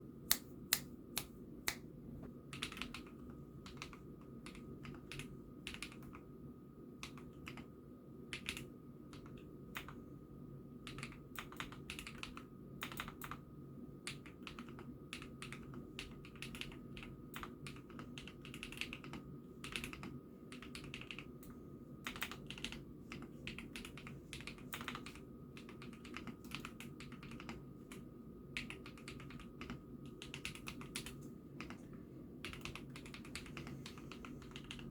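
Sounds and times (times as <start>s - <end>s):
steady low hum: 0.0s - 34.9s
mechanical keyboard typing: 2.5s - 6.2s, 7.0s - 7.7s, 8.3s - 10.0s, 10.8s - 13.4s, 14.1s - 21.4s, 22.0s - 28.0s, 28.6s - 31.8s, 32.4s - 34.9s.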